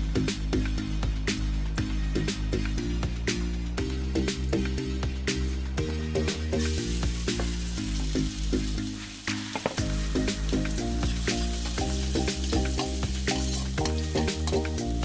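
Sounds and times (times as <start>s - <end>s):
background music: 0.0s - 15.0s
food sizzling in a pan: 6.6s - 15.0s.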